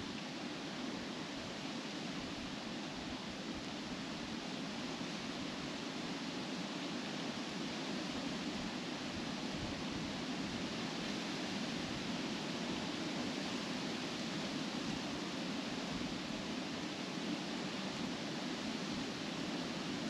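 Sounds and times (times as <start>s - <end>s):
wind rustling leaves: 0.0s - 20.0s.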